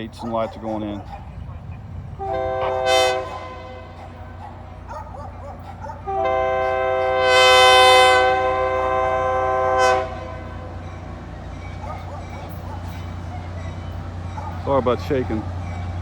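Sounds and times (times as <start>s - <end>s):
locomotive air horn blasts: 2.0s - 4.5s, 6.0s - 11.1s.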